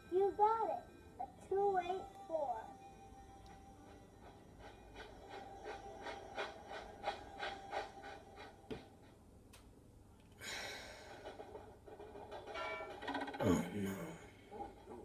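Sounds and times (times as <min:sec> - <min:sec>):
toy steam train chuffing: 0:03.5 - 0:08.7.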